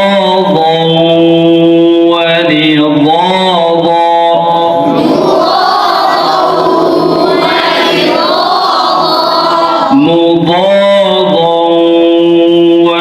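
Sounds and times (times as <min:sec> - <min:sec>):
students chanting in unison: 0:04.6 - 0:10.2.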